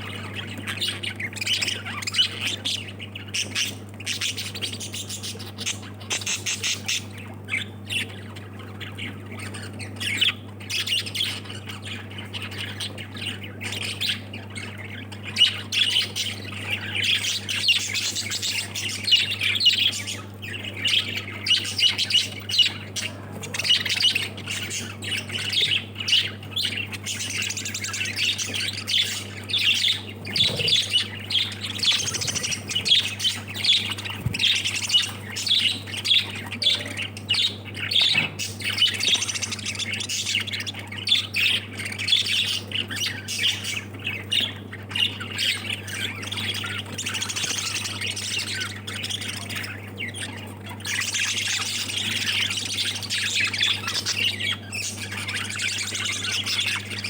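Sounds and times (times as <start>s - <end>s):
parrots chattering and squawking: 0.0s - 57.0s.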